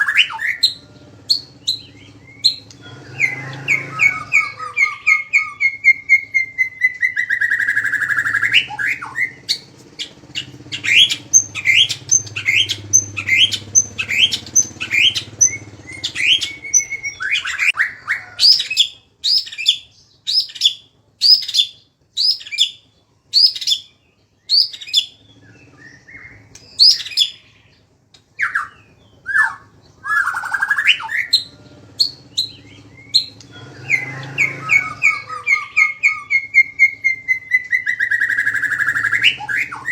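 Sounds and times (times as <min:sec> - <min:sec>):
songbird rapid high notes: 0:00.0 - 0:19.7.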